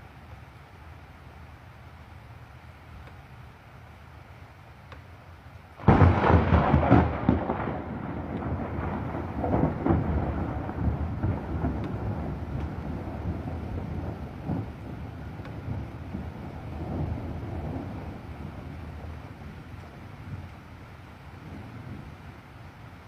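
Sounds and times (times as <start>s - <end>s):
rain hissing: 0.0s - 23.0s
thunder crack and rumble: 5.8s - 22.4s.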